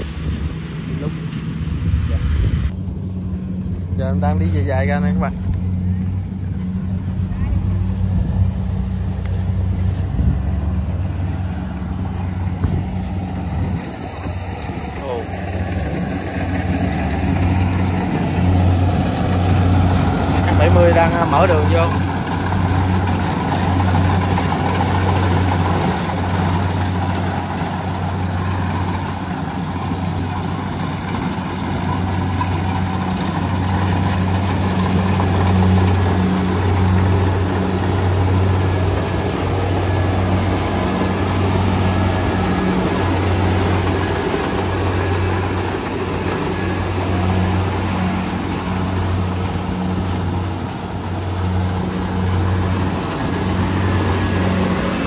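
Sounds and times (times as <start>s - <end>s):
diesel engine humming: 0.0s - 55.0s.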